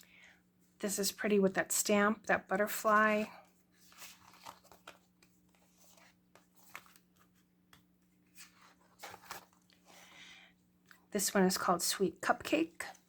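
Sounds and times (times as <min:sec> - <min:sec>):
cards rustling and tapping: 0:02.8 - 0:10.0.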